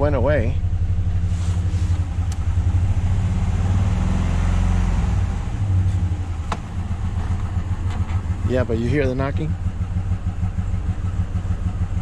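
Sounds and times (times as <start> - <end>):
truck engine idling: 0.0 - 3.8, 5.5 - 12.0
engine knocking: 6.5 - 12.0.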